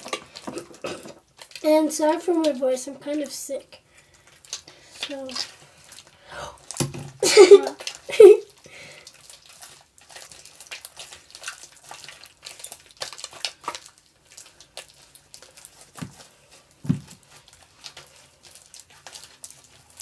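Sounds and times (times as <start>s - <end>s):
sticky slime clicks and squelches: 9.1s - 16.3s.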